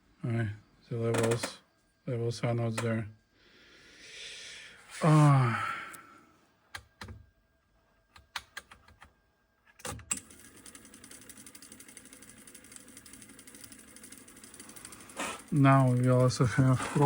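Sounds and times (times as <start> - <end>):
cassette mechanism clunk: 1.1 - 1.6
tape transport mechanical patter: 13.8 - 17.0.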